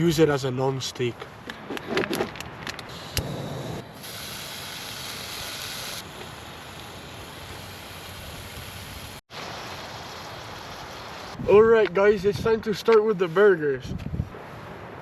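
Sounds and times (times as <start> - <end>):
bacon sizzling in a frying pan: 4.0 - 11.4.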